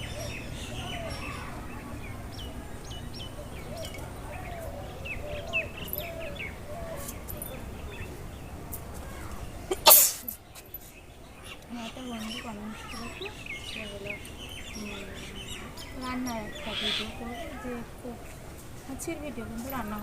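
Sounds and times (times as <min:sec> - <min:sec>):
birds chirping: 0:00.0 - 0:20.0
low outdoor rumble: 0:00.0 - 0:20.0
loud sneeze: 0:09.7 - 0:10.4.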